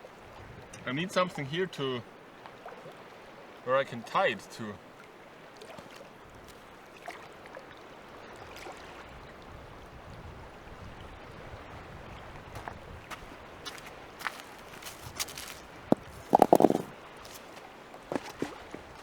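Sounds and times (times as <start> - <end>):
lake water lapping: 4.8 - 9.0
faint clicks and knocks: 15.2 - 16.9.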